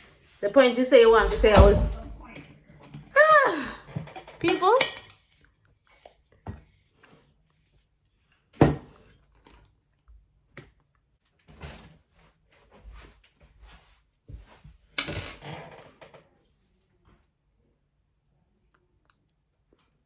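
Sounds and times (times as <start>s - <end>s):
objects knocking and clattering: 1.0s - 2.4s.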